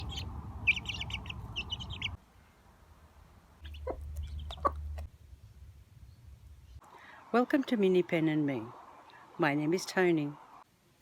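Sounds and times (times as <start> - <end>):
chickens clucking: 0.0 - 2.2, 3.6 - 5.1
low background rumble: 0.0 - 2.2.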